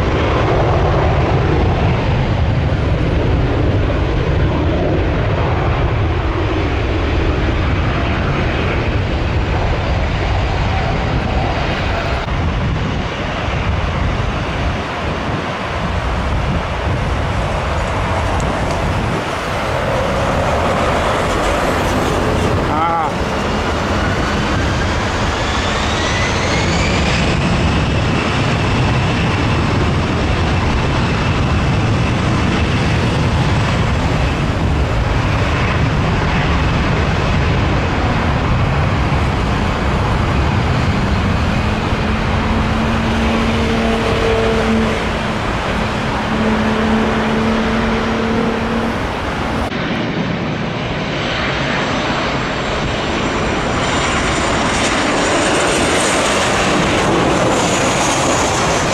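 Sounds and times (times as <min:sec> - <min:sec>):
jet airliner engine whine: 0:00.0 - 0:58.9
road traffic: 0:05.8 - 0:58.9
low hum: 0:38.9 - 0:49.7.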